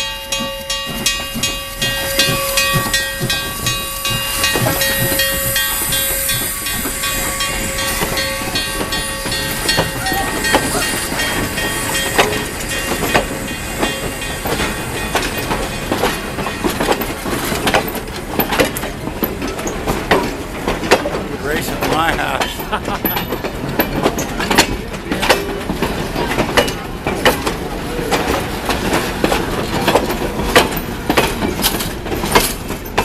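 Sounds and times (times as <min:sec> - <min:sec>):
train wheels clanking: 0:00.0 - 0:33.0
steady tone: 0:00.6 - 0:15.7
steam hissing: 0:01.7 - 0:19.8.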